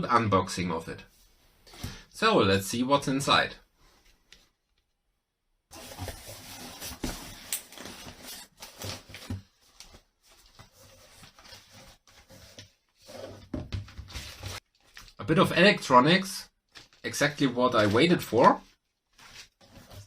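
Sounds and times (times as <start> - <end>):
packaging rustling: 5.7 - 12.9.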